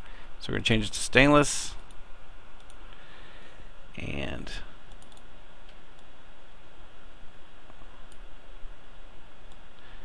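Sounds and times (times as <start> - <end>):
microphone hiss: 0.0 - 10.0
faint mouse clicks: 2.6 - 3.0, 4.9 - 6.1.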